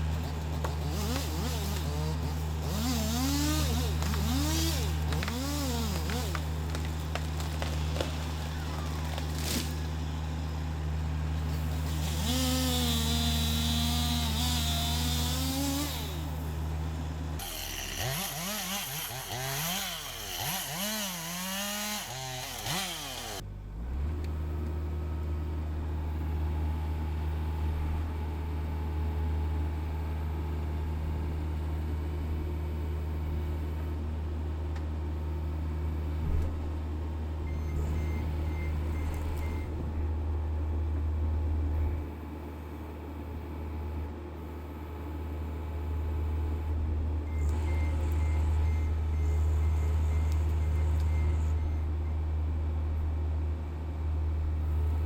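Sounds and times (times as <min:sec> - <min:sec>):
excavator diesel engine running: 0:00.0 - 0:18.5, 0:19.2 - 0:55.0
chainsaw running and cutting: 0:00.0 - 0:23.4
steady low hum: 0:23.3 - 0:55.0.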